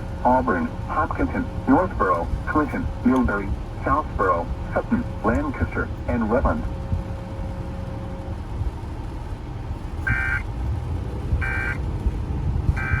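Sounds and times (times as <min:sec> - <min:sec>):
low steady hum: 0:00.0 - 0:13.0
digital data tone bursts: 0:11.4 - 0:11.8.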